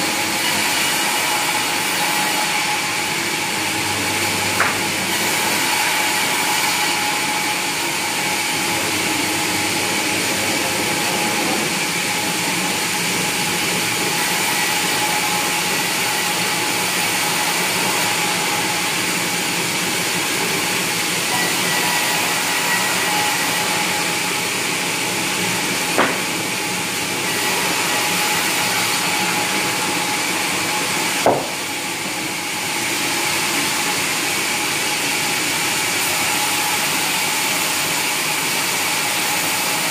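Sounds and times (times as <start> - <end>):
sawmill saw whining: 0.0 - 39.9
sharp knocks: 4.6 - 4.9, 26.0 - 26.4, 31.2 - 31.6.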